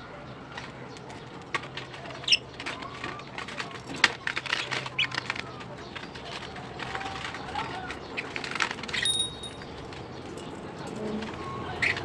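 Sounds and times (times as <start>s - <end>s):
birds pecking and scratching: 0.2s - 12.0s
short high bird chirp: 9.0s - 9.8s.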